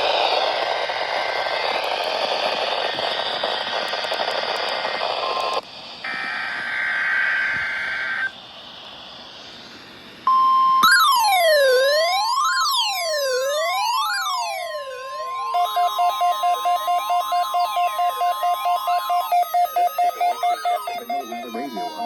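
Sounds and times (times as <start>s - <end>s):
radio static hiss: 0.0s - 10.3s, 13.3s - 22.0s
steady warning alarm tone: 5.2s - 8.4s, 10.2s - 22.0s
warbling digital header tones: 5.3s - 8.3s, 10.3s - 22.0s
rising and falling siren tone: 5.3s - 8.4s, 10.2s - 22.0s.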